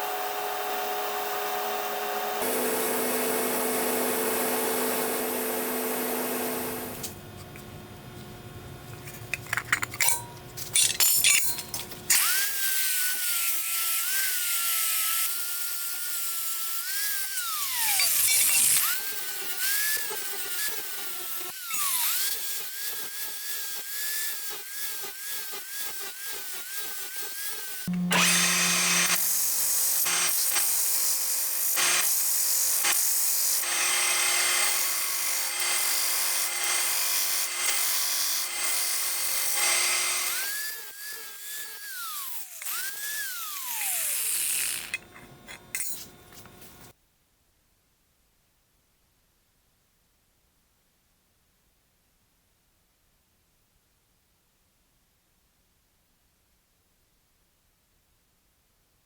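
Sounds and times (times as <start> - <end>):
power tool motor whine: 0.0 - 7.1, 16.6 - 32.2, 32.8 - 46.9
shop tool noise: 17.5 - 30.8, 36.5 - 47.0.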